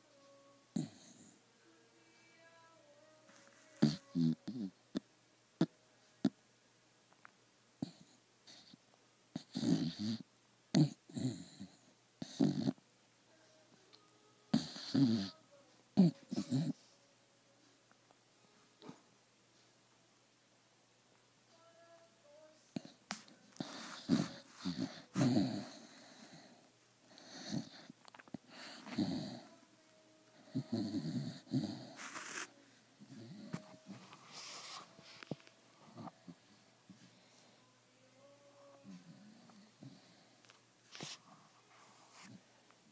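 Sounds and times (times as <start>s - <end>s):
pet snoring loudly: 9.4s - 10.2s, 10.8s - 12.8s, 14.5s - 15.4s, 23.6s - 26.5s, 30.5s - 32.5s.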